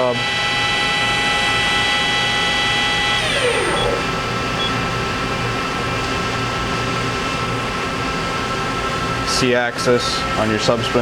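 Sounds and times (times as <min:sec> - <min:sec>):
machine spindle whining: 0:00.0 - 0:04.9
steady machine hum: 0:00.0 - 0:11.0.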